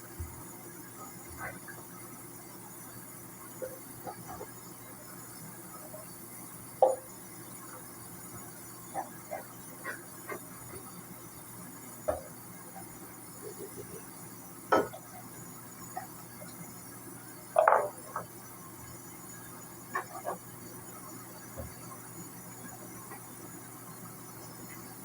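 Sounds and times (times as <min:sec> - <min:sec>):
faint steady hum: 0:00.0 - 0:25.0
dishes clinking and knocking: 0:14.7 - 0:15.1, 0:17.6 - 0:18.3.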